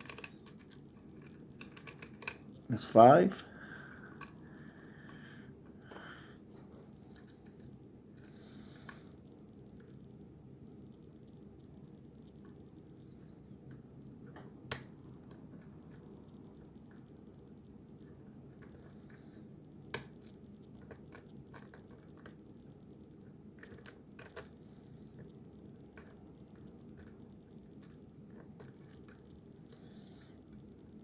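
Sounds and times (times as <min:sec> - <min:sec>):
lock pick clicking and tapping: 0:01.6 - 0:02.4.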